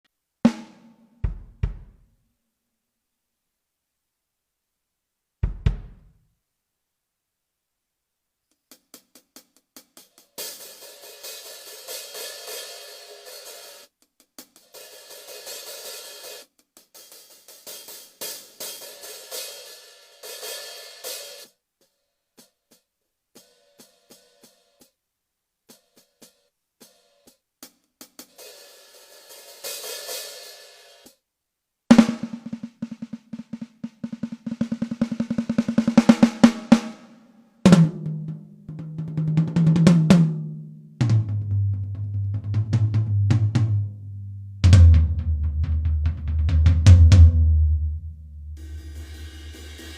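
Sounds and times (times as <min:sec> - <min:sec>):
electronic drum roll: 0:00.5 - 0:02.0, 0:05.4 - 0:06.2, 0:31.9 - 0:37.0, 0:41.0 - 0:44.0, 0:44.6 - 0:49.9
electronic crash cymbal hits: 0:48.6 - 0:49.9.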